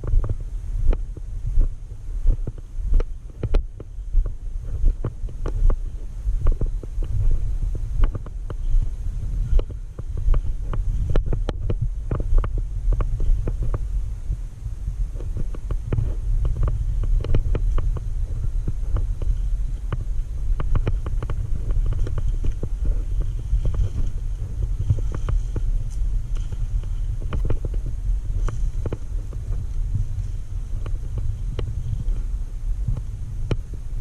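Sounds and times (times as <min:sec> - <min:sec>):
steady low rumble: 0:00.0 - 0:34.0.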